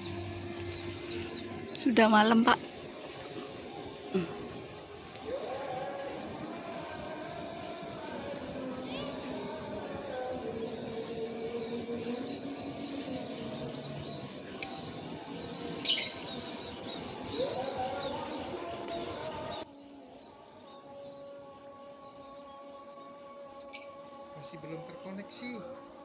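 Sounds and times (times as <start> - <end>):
bird chirping: 0.0 - 4.3, 9.1 - 24.2
outdoor background noise: 0.0 - 26.0.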